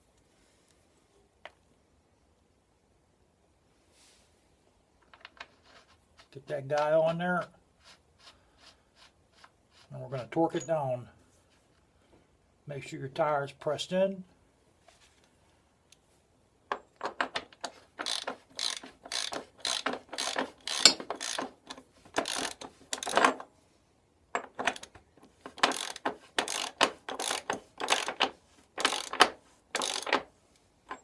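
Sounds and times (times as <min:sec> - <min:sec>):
ratchet wrench clicking: 0:17.6 - 0:23.4, 0:25.5 - 0:30.2.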